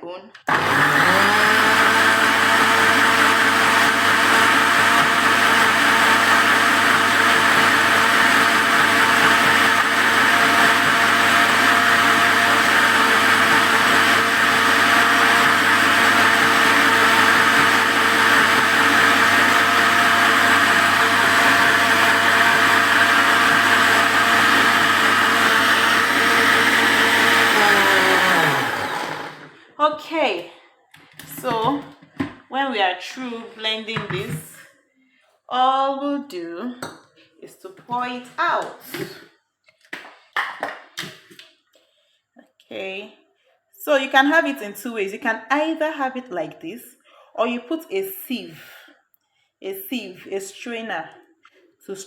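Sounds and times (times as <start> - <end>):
kitchen blender running: 0.4 - 29.7.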